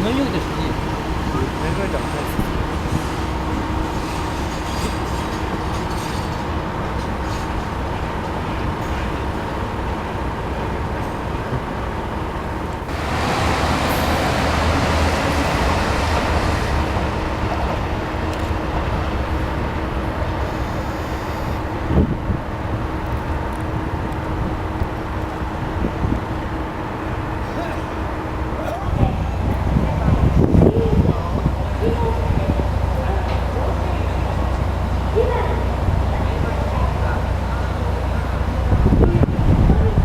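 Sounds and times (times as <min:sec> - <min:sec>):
train humming with steady tones: 0:00.0 - 0:40.0
rush of noise: 0:11.0 - 0:40.0.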